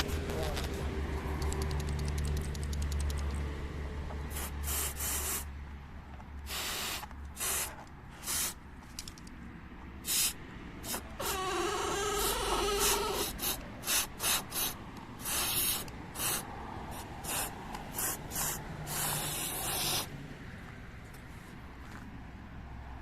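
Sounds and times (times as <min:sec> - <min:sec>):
aerosol spray hissing: 0:04.3 - 0:05.5, 0:06.5 - 0:08.6, 0:10.0 - 0:20.1
short squeaky tone: 0:10.9 - 0:13.3.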